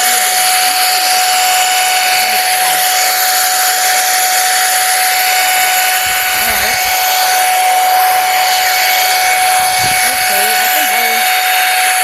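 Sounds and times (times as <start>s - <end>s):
hot air brush blowing air: 0.0s - 12.0s
motor whine: 0.0s - 12.0s.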